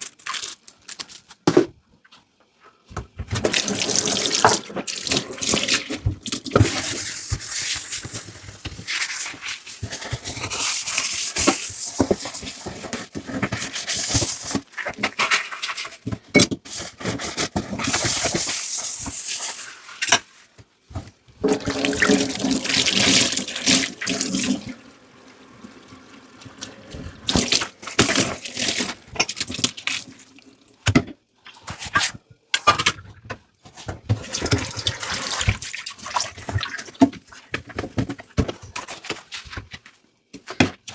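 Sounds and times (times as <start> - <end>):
tap running into sink: 3.2 - 8.8, 21.4 - 30.2.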